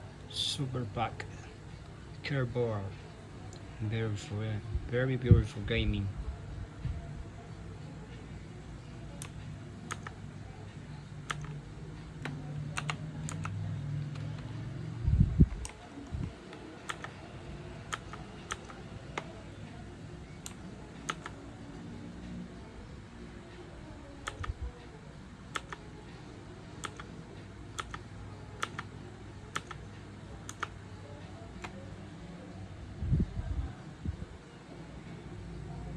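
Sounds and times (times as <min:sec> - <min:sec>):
mechanical keyboard key clicks: 0:27.8 - 0:28.0, 0:29.5 - 0:29.8.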